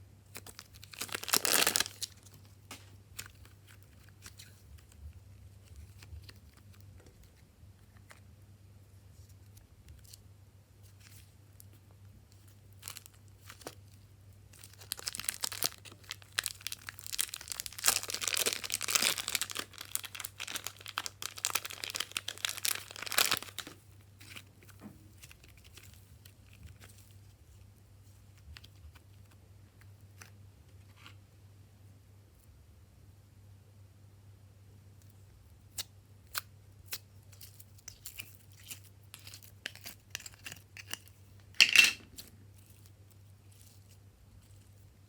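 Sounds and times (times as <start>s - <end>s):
crinkling handling noise: 0.2s - 10.2s, 10.8s - 31.3s, 36.9s - 45.0s.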